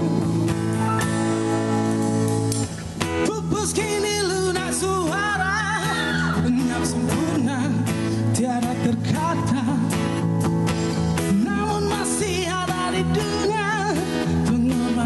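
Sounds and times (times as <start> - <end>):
bass: 0.0 - 15.0
guitar: 0.0 - 15.0
person singing with vibrato: 3.2 - 10.0, 11.2 - 15.0.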